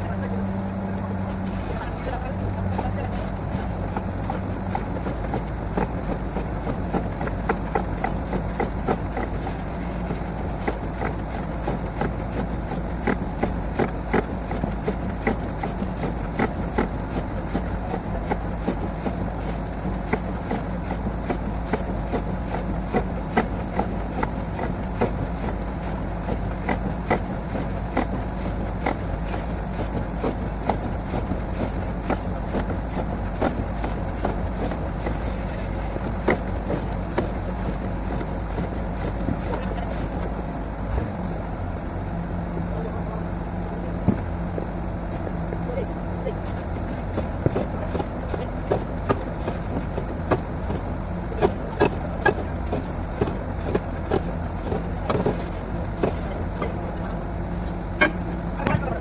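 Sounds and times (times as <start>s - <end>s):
drilling rig engine running: 0.0s - 59.0s
sharp clicks and knocks: 46.4s - 59.0s.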